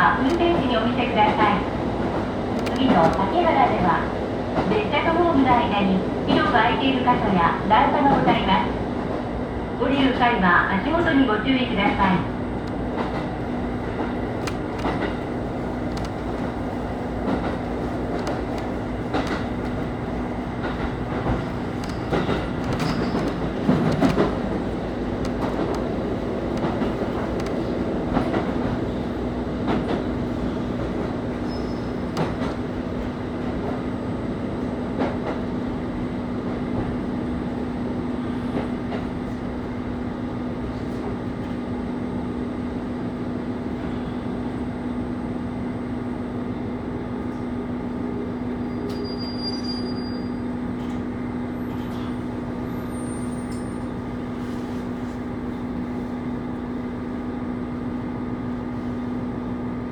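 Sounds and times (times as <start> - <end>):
rail noise: 0.0 - 59.9
railcar engine hum: 0.0 - 59.9
wheels clicking over rail joints: 20.6 - 28.5.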